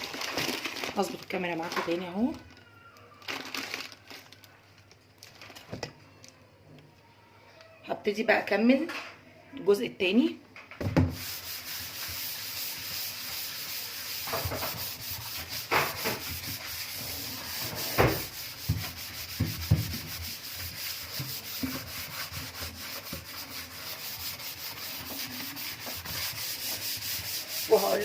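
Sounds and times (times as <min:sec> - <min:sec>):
scouring pad scrubbing metal sink: 0:11.0 - 0:28.0.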